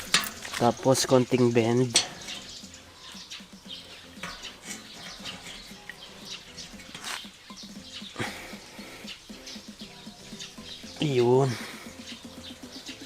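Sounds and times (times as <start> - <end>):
light chirping: 0.0 - 13.0.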